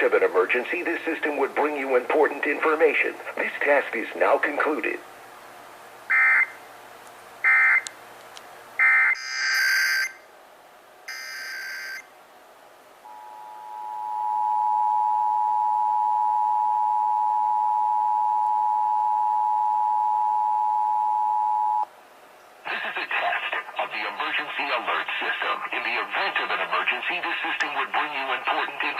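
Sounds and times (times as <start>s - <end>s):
digital data bursts: 8.8s - 10.2s, 11.1s - 12.0s
two-tone attention signal: 13.0s - 21.9s.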